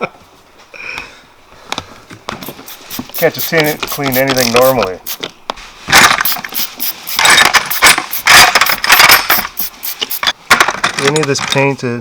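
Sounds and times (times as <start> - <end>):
small metal parts clinking: 6.0 - 11.6.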